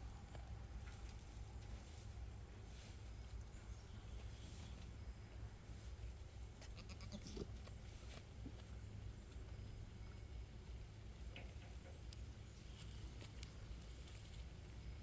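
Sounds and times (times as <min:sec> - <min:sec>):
goat bleating faintly: 0:06.6 - 0:07.7.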